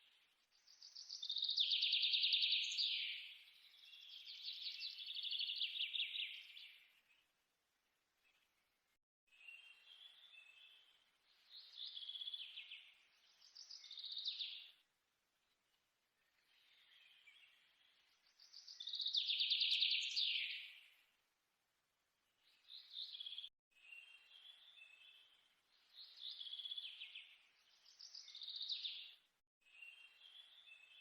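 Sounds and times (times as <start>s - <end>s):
songbirds chirping: 0.0s - 31.0s.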